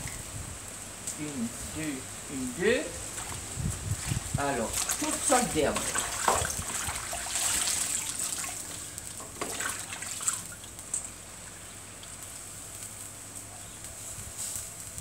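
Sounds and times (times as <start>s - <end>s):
water trickling: 3.2s - 12.2s.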